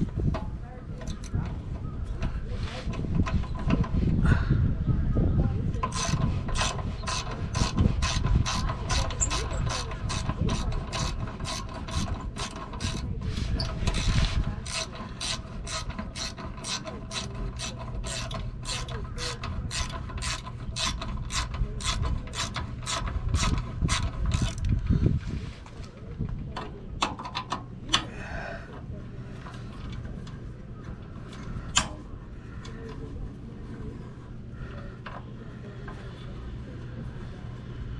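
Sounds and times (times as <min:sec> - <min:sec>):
ratchet clicking: 0:01.0 - 0:01.4, 0:05.8 - 0:24.7.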